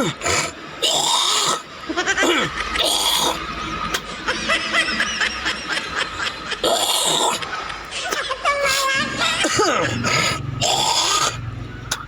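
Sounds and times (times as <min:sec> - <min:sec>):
snickering and chuckling: 0:01.4 - 0:12.0.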